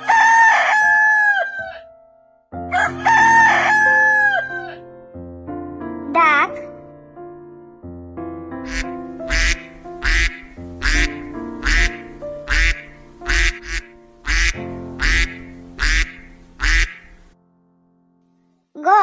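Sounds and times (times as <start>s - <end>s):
children's music with keyboard: 0.0s - 7.5s, 8.6s - 17.3s
duck quacking: 8.6s - 17.3s.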